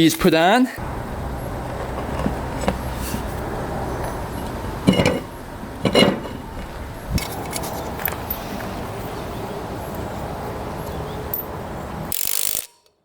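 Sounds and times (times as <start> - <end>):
metal tools and wheel rim clanking: 0.8 - 8.6.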